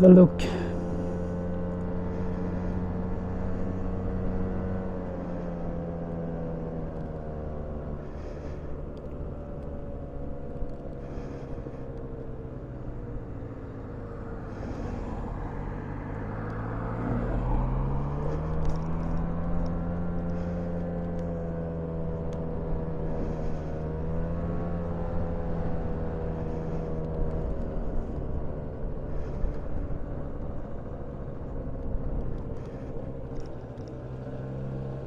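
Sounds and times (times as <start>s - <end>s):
car engine running: 16.8s - 35.0s.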